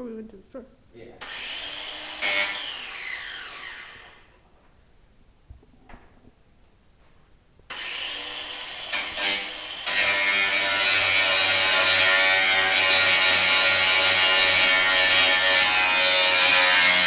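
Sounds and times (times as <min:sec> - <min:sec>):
power tool on metal: 0:01.2 - 0:04.3, 0:07.7 - 0:17.0.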